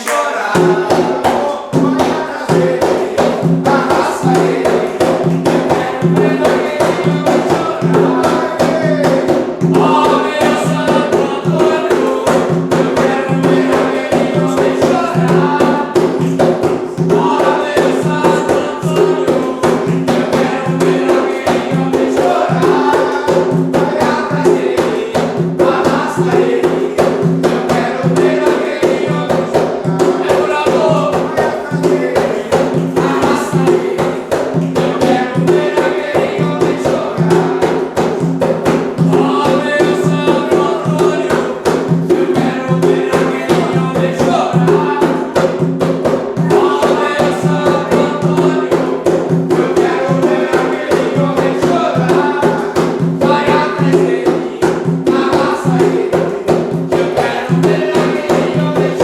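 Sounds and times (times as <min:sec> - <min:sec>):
group chanting: 0:00.0 - 0:59.0
hand percussion beat: 0:00.0 - 0:59.0.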